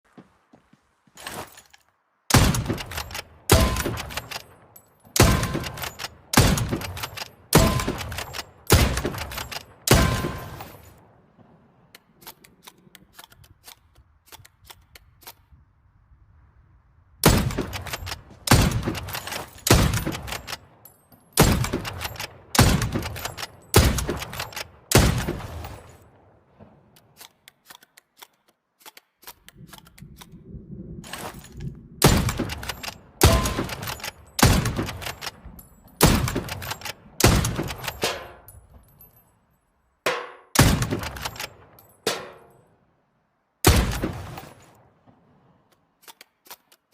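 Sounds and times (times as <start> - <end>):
rifle shots: 2.3 - 4.6, 5.2 - 10.9, 17.2 - 20.7, 21.4 - 26.0, 32.0 - 38.5, 40.1 - 42.5, 43.6 - 44.8
small clicks and knocks: 27.0 - 30.4.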